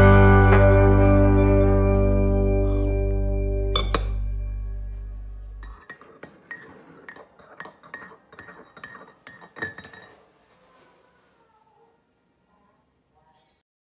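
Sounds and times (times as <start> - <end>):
background music: 0.0 - 5.7
clinks and taps of hard objects: 3.8 - 4.2, 5.6 - 10.2.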